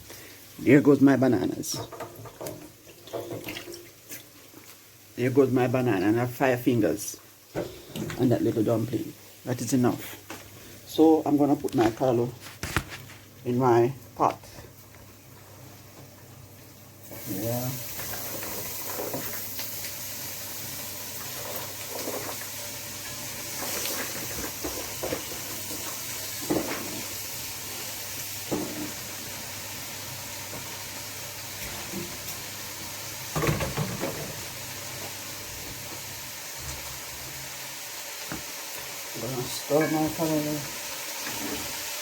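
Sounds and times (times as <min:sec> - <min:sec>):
food sizzling in a pot: 0:00.0 - 0:42.0
utensils clattering against pot: 0:39.7 - 0:40.4.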